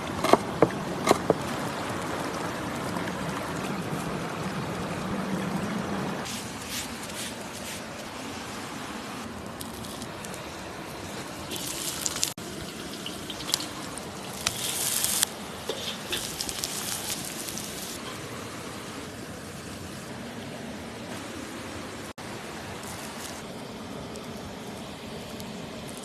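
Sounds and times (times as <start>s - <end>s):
flowing water: 0.0s - 26.0s
high crackling bursts: 11.5s - 18.0s.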